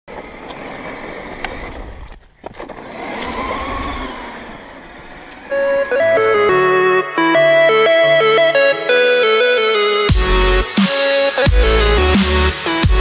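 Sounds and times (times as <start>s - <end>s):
electric motor whining: 0.1s - 8.4s
electronic music: 5.5s - 13.0s.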